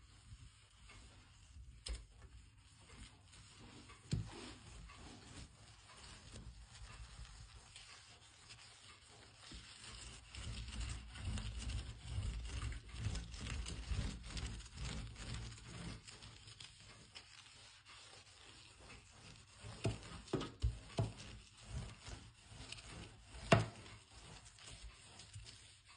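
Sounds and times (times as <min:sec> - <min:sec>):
scrubbing on a surface: 0:00.0 - 0:25.9.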